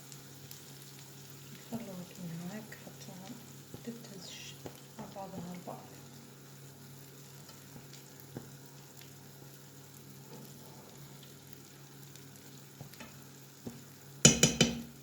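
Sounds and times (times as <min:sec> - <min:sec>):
omelette sizzling in frying pan: 0:00.0 - 0:15.0.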